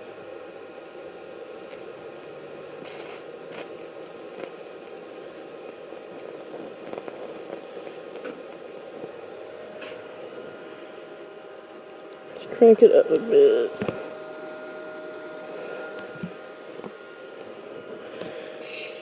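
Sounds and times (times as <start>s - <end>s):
welding arc buzzing hiss: 0.0s - 19.0s
welding arc crackles: 0.8s - 10.5s.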